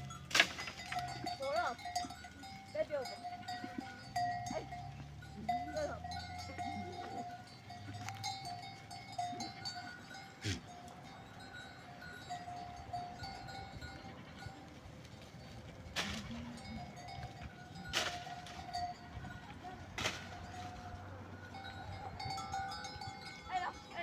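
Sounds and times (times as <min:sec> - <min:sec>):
livestock bells clinking: 0:00.0 - 0:24.0
sheep or goat bleating: 0:03.1 - 0:10.9.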